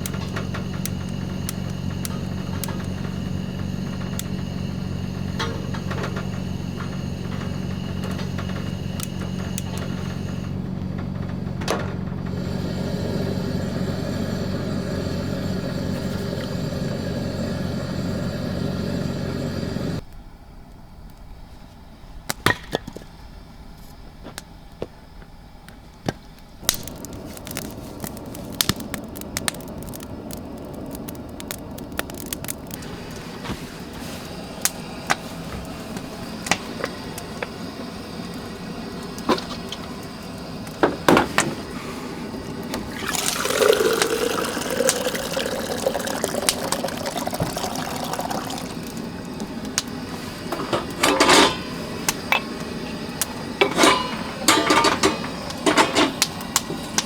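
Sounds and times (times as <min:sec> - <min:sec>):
water pouring: 0:42.2 - 0:51.8.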